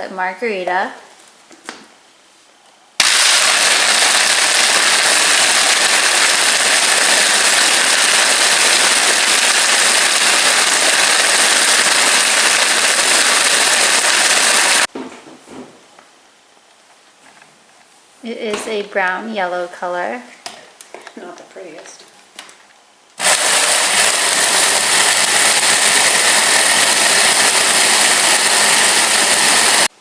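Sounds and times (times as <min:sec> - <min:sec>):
blender running: 0:03.0 - 0:14.9, 0:23.2 - 0:29.9.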